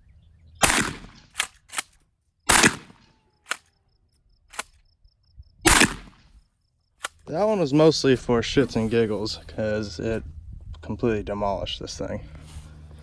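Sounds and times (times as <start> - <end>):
shotgun shots: 0.6 - 1.9, 2.5 - 3.6, 5.7 - 6.2.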